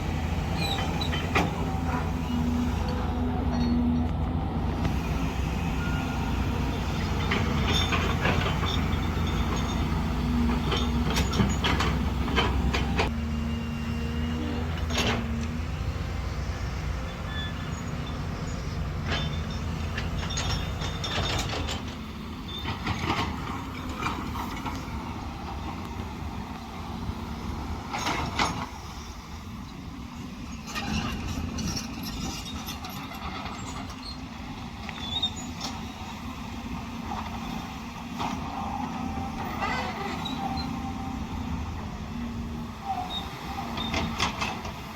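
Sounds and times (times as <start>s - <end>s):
excavator diesel engine running: 0.0s - 44.9s
metal clanks and knocks: 7.1s - 13.1s, 19.0s - 24.8s.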